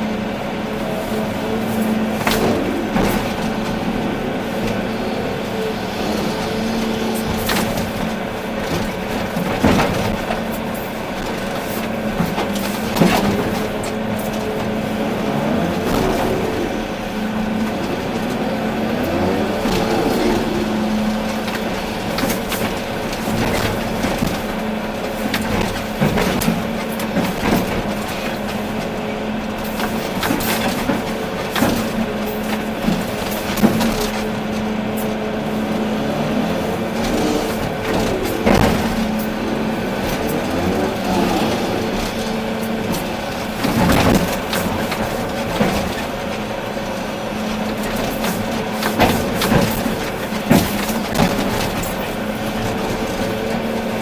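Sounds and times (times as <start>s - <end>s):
excavator engine droning: 0.0s - 54.0s.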